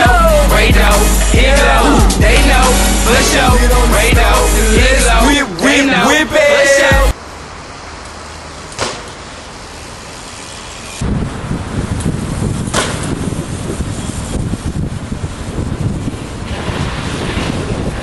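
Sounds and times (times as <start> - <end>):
wind buffeting microphone: 11.0 - 18.0.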